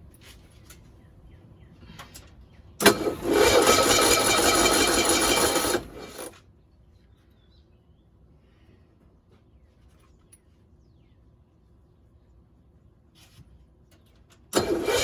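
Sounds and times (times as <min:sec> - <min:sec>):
engine starting and running: 0:02.8 - 0:06.4, 0:14.5 - 0:15.0.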